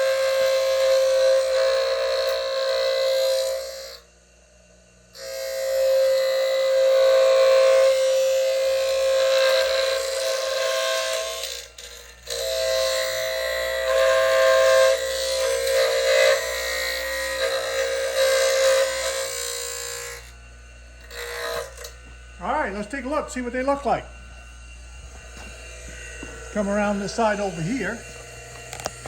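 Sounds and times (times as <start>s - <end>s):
grinding wheel motor whine: 0.0s - 29.0s.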